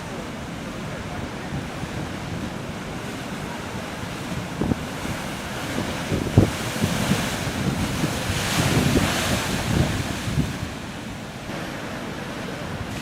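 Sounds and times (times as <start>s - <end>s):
waves breaking: 0.0s - 13.0s
wind buffeting microphone: 1.2s - 11.4s.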